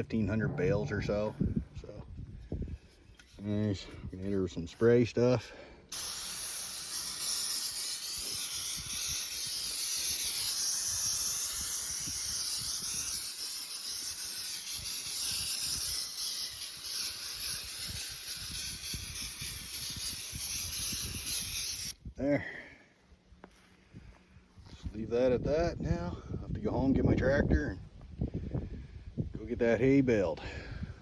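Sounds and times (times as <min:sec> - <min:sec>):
aerosol spray can hissing: 0:05.9 - 0:22.0.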